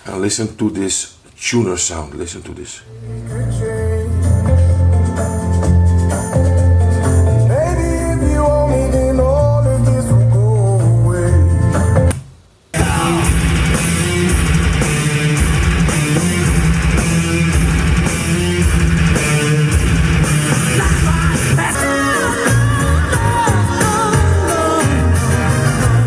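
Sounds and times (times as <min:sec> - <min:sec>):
person singing: 0:02.9 - 0:12.0, 0:12.8 - 0:14.4, 0:19.0 - 0:26.0
song with bass beat and guitar: 0:03.2 - 0:12.2, 0:12.8 - 0:26.0.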